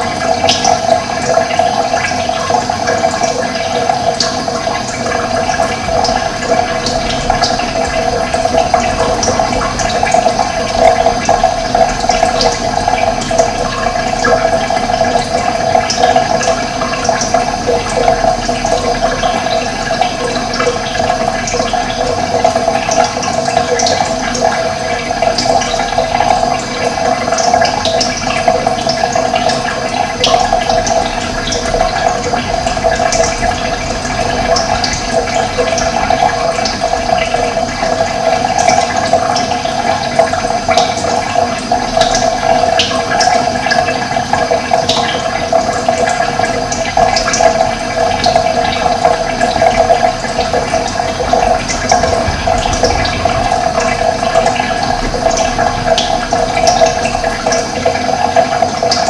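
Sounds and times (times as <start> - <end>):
rushing water: 0.0 - 59.0.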